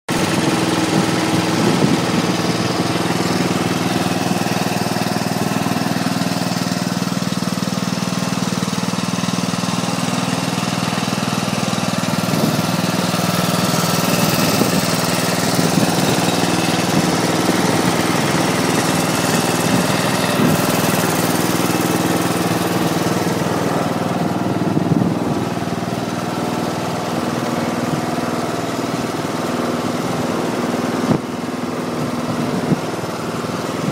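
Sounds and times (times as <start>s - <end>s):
tractor engine running: 0.1s - 33.9s.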